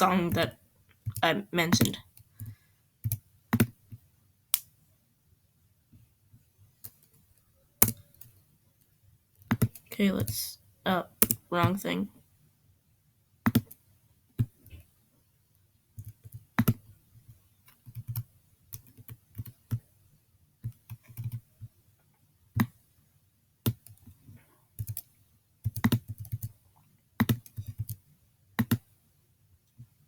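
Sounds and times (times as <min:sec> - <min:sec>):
keyboard typing: 0:00.0 - 0:04.0, 0:09.4 - 0:10.4, 0:13.4 - 0:13.8, 0:16.0 - 0:16.9, 0:17.7 - 0:19.9, 0:20.6 - 0:21.7, 0:23.6 - 0:24.2, 0:24.8 - 0:26.6, 0:27.2 - 0:28.0, 0:28.6 - 0:28.9
mouse clicking: 0:23.6 - 0:24.1, 0:28.6 - 0:28.9.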